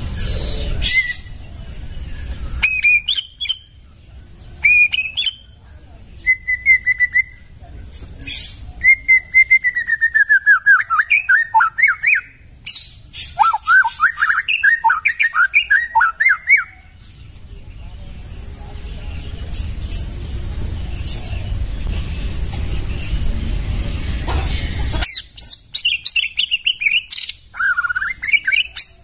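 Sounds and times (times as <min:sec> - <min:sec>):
bird singing whistled phrases: 0:00.2 - 0:01.4, 0:02.1 - 0:03.8, 0:04.5 - 0:05.6, 0:06.2 - 0:17.2, 0:25.0 - 0:29.0.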